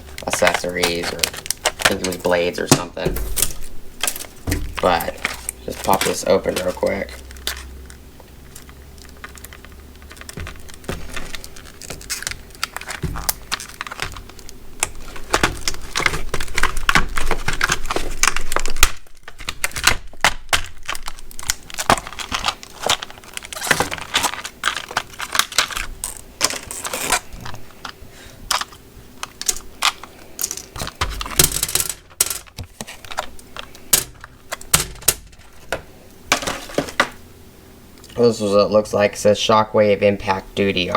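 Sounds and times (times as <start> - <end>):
plastic packaging being cut open: 0.1 - 27.7.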